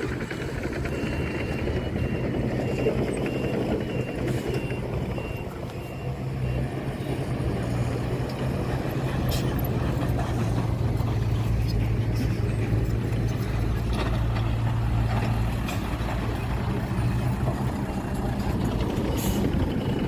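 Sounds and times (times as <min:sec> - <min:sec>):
back-up alarm beeping: 0:00.0 - 0:06.8
heavy diesel machinery running: 0:00.0 - 0:20.0.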